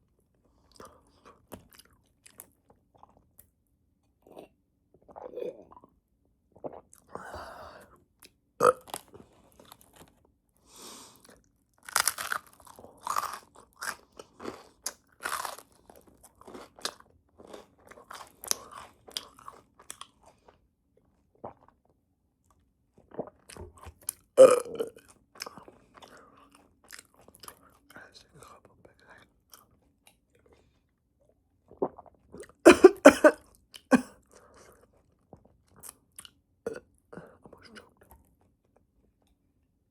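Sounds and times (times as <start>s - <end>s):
person crunching a bagel: 11.8s - 20.3s.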